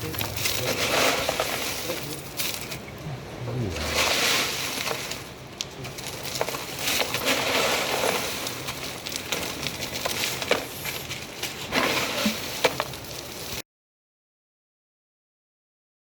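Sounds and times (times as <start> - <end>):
ice crusher grinding ice: 0.0 - 2.9, 3.7 - 13.6
ice pieces clinking: 0.0 - 3.0, 3.7 - 13.6.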